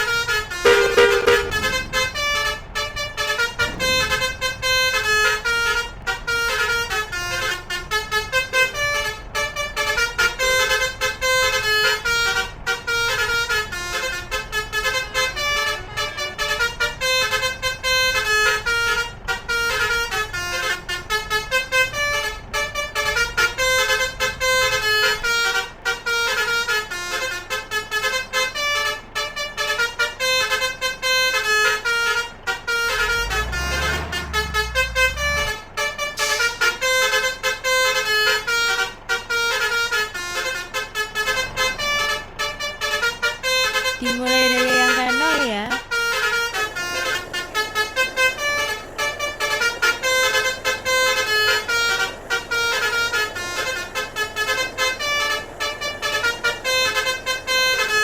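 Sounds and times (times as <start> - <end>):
multi-tone trumpet horns playing melodies: 0.0 - 58.0
deep rumble: 0.6 - 6.2, 32.8 - 36.1.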